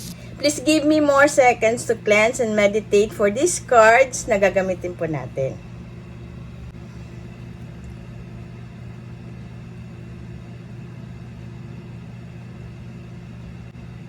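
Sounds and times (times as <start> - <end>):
low machine hum: 0.0 - 14.0.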